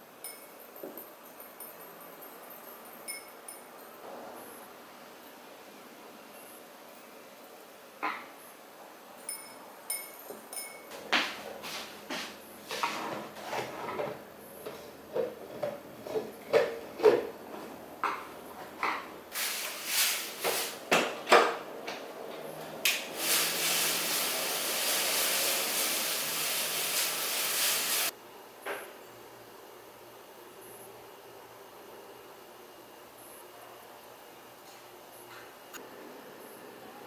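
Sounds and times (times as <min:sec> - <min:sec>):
tools knocking and clinking: 0:00.2 - 0:04.0, 0:09.2 - 0:11.1
steady hiss: 0:19.3 - 0:20.8, 0:22.9 - 0:28.2.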